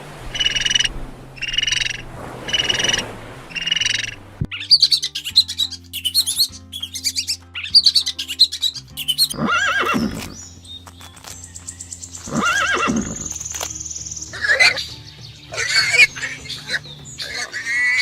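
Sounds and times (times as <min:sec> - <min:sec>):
rising and falling animal calls: 0:00.2 - 0:10.5, 0:12.1 - 0:18.0
background music: 0:03.6 - 0:18.0.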